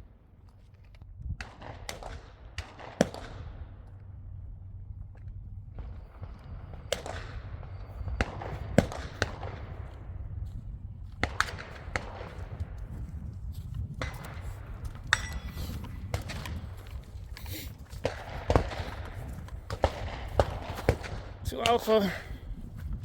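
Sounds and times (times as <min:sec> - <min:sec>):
gunshots: 0:01.4 - 0:03.8, 0:05.8 - 0:10.2, 0:11.2 - 0:12.8, 0:14.0 - 0:22.3.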